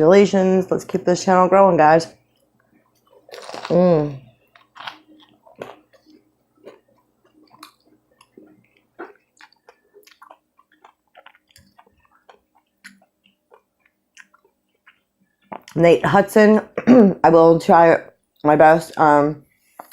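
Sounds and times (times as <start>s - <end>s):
person chewing food: 2.2s - 15.8s, 19.6s - 19.9s.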